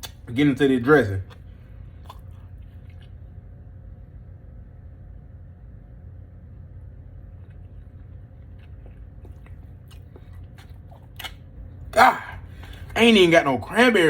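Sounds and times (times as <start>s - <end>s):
steady low hum: 0.0s - 14.0s
quiet chewing: 1.2s - 3.6s, 6.6s - 13.0s.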